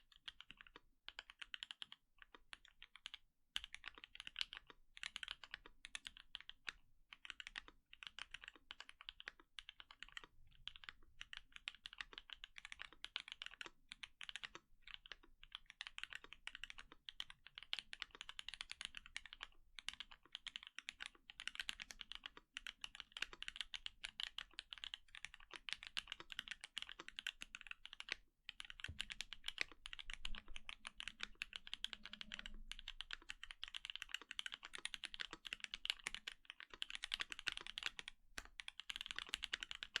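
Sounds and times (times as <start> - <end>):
mechanical keyboard typing: 0.1 - 40.0.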